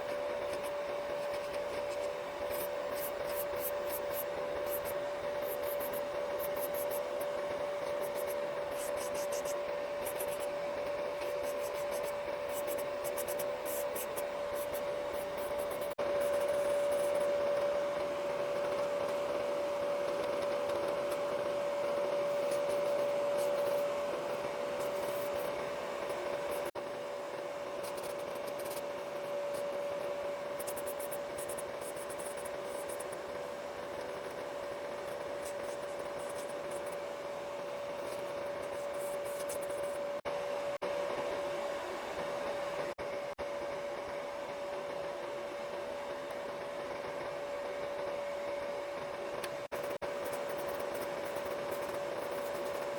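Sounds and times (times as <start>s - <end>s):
scratchy nail filing strokes: 0.0s - 17.4s, 22.2s - 23.9s, 27.8s - 29.0s, 29.6s - 33.2s, 35.1s - 37.0s, 49.8s - 52.9s
small electric motor humming: 0.0s - 40.2s, 49.1s - 52.9s.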